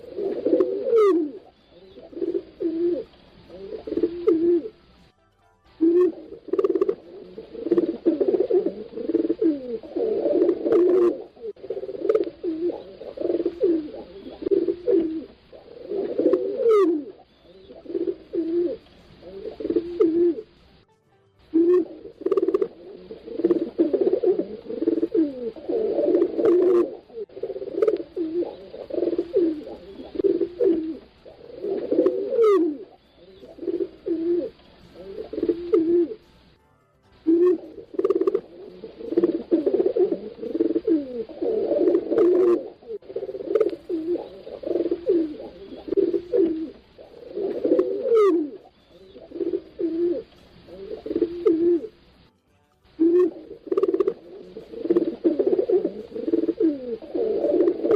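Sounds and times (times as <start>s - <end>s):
pigeons cooing: 0.0s - 5.0s, 5.8s - 20.6s, 21.5s - 36.2s, 37.2s - 52.3s, 52.9s - 57.9s
faint higher chirps: 0.0s - 10.1s, 10.7s - 41.4s, 42.2s - 56.8s.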